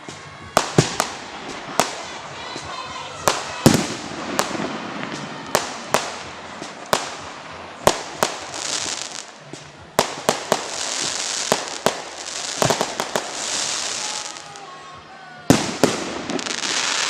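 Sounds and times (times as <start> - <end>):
hissing crackle: 0.0 - 14.9
fireworks bangs: 0.0 - 17.0.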